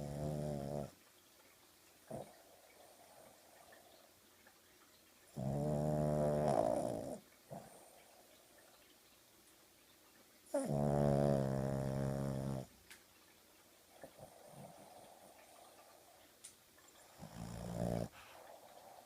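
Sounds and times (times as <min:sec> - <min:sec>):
dog snoring: 0:00.0 - 0:01.0, 0:02.1 - 0:02.4, 0:05.3 - 0:07.9, 0:10.5 - 0:12.7, 0:17.0 - 0:19.0.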